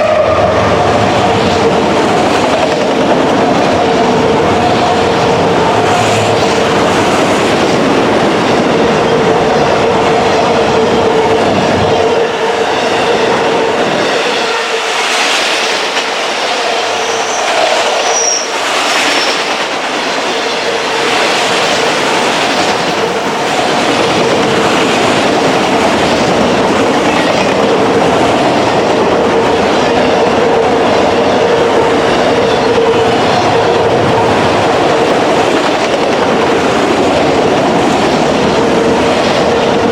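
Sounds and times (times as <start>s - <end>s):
train wheels clattering over rails: 0.7s - 39.9s
high wheel squeals: 17.0s - 19.5s.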